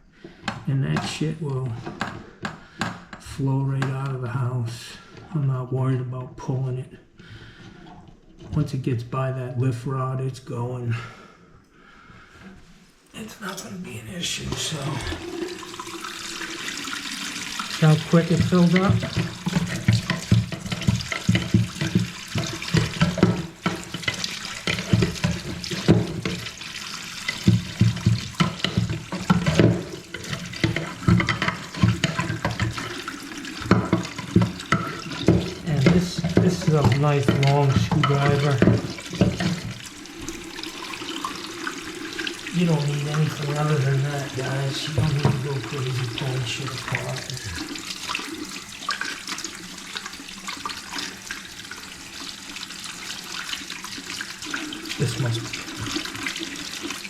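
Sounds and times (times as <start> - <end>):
faucet running into sink: 0.4 - 4.2, 13.2 - 57.0
water splashing: 13.2 - 57.0.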